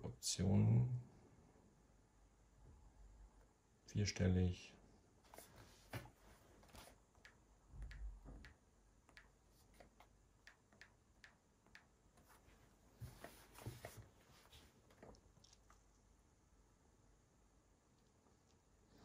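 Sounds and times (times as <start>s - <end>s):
soft low bumps of tablet handling: 5.3s - 7.0s, 12.2s - 15.2s.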